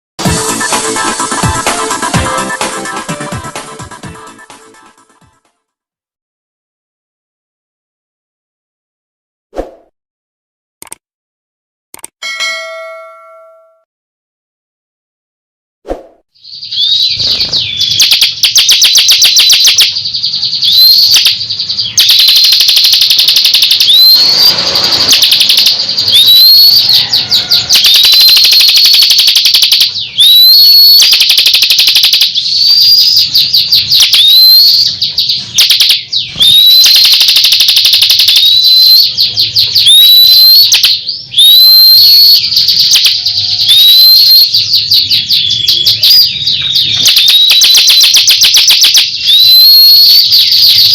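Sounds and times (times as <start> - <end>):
bird singing trills and whistles: 16.4 - 50.9.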